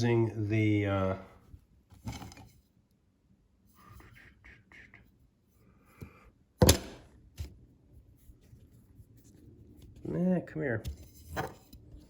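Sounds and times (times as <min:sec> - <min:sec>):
sharp thunk: 0:06.6 - 0:07.0
faint handling sounds: 0:07.3 - 0:12.0.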